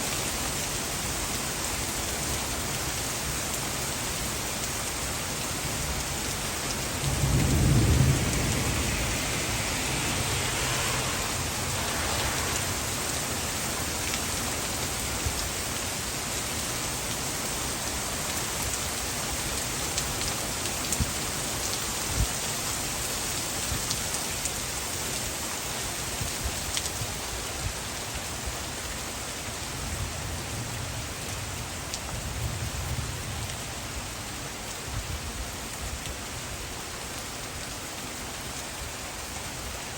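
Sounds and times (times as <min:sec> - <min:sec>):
heavy downpour hissing: 0:00.0 - 0:39.9
thunder rolling: 0:06.8 - 0:14.2.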